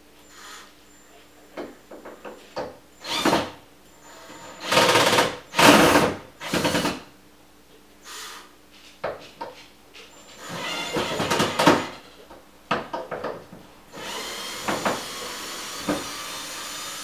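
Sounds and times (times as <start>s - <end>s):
power tool bursts: 3.0s - 3.6s, 13.9s - 17.0s.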